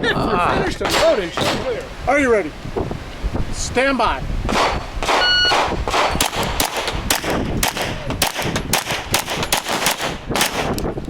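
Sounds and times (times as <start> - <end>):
rapid pistol fire: 4.5 - 10.8
electronic beep: 5.2 - 5.6.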